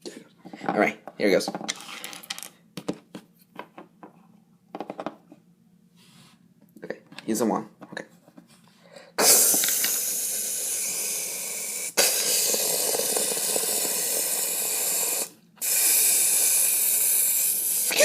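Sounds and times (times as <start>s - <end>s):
firework spraying sparks hissing: 9.2s - 18.0s.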